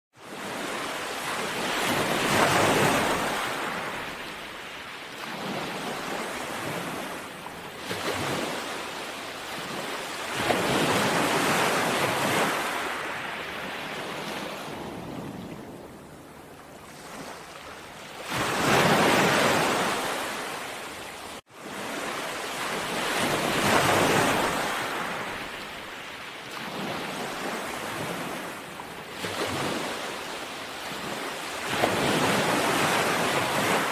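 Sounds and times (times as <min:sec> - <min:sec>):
sea waves breaking ashore: 0:00.2 - 0:33.9.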